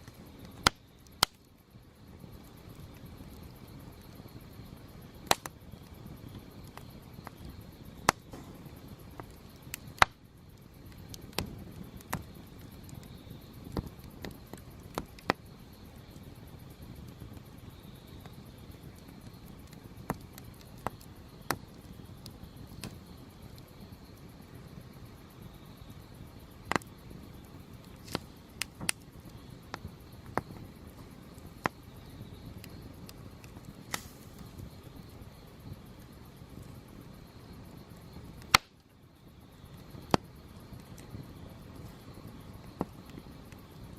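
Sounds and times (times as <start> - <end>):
campfire crackling and popping: 0.0 - 43.9
low rustle of flames: 0.0 - 43.9.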